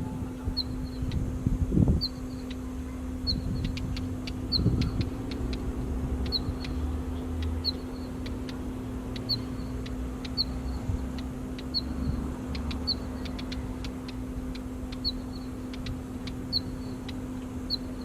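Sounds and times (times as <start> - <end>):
low traffic rumble: 0.0 - 18.0
steady hum: 0.0 - 18.0
bird sharp clicking notes: 3.2 - 18.0
bird high whistle calls: 9.2 - 18.0.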